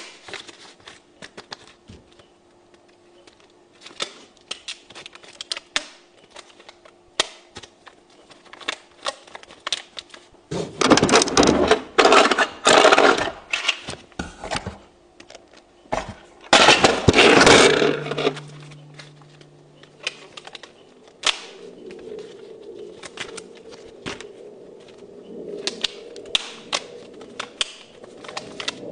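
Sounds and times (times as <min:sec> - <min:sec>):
paper crumpling: 0:21.9 - 0:28.9.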